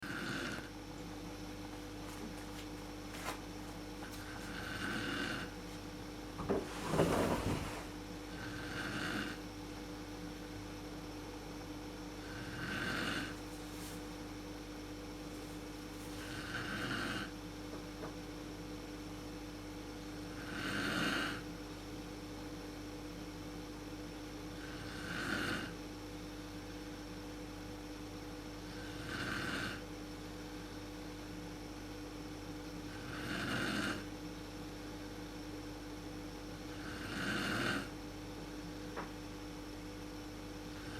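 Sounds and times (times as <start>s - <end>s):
woman snoring: 0.0s - 0.7s, 4.2s - 5.5s, 8.3s - 9.4s, 12.2s - 13.4s, 16.2s - 17.4s, 20.3s - 21.5s, 24.6s - 25.8s, 28.7s - 29.8s, 32.9s - 34.1s, 36.7s - 37.9s
steady electrical hum: 0.0s - 40.9s.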